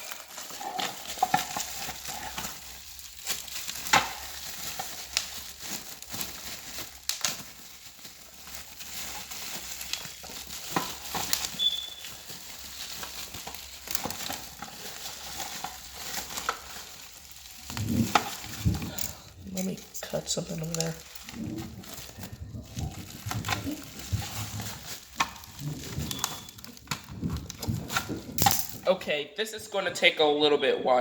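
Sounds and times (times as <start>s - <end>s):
plastic wrapping crinkling: 0.0s - 29.0s.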